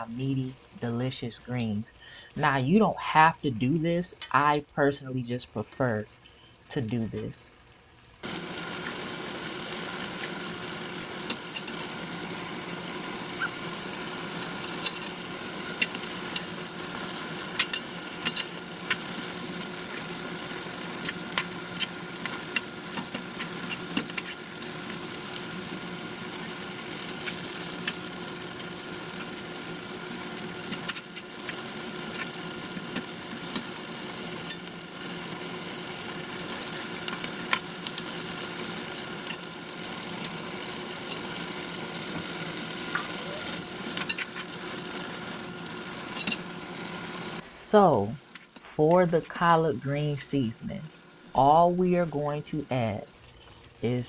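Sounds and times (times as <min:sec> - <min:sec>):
cooking hiss and hum: 0:00.0 - 0:54.0
utensils clicking on cookware: 0:08.2 - 0:47.2.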